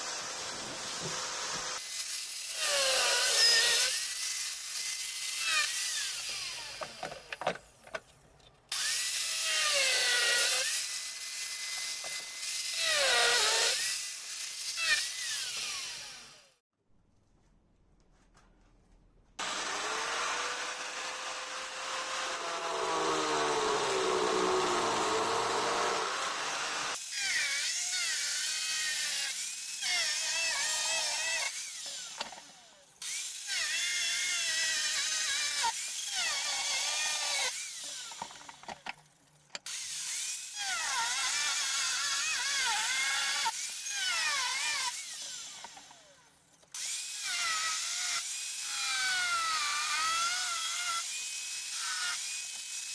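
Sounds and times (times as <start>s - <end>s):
power tool running under load: 0.0s - 1.9s, 19.4s - 27.0s.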